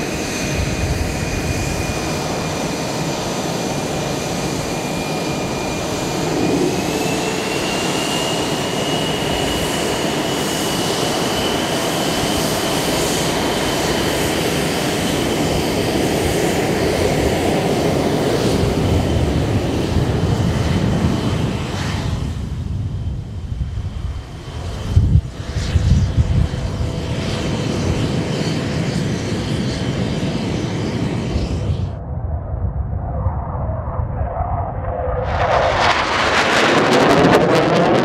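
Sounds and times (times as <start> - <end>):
jet engine roaring with whine: 0.0 - 38.0.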